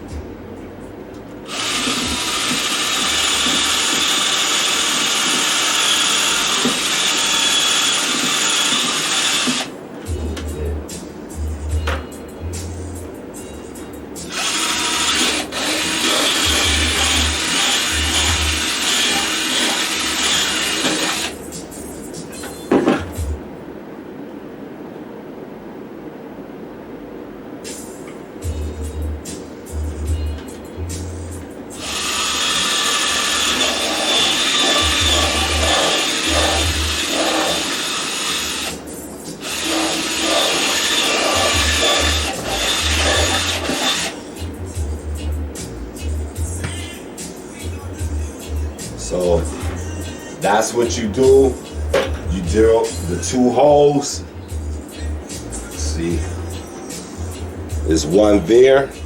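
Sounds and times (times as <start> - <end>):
power drill boring plastic: 1.5 - 9.7, 14.3 - 21.3, 31.8 - 38.8, 39.4 - 44.2.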